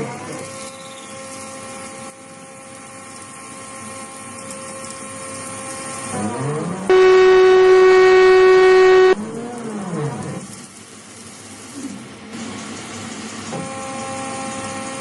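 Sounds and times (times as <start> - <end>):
stepper motor whining: 6.2 - 10.3.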